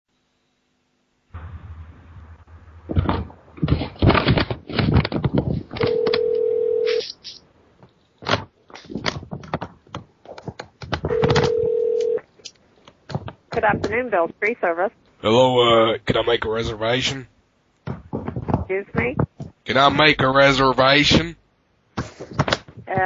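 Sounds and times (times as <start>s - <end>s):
clicks and rustling on phone line: 3.7s - 7.1s, 7.8s - 14.0s
telephone ringback tone: 5.8s - 7.1s, 11.1s - 12.2s.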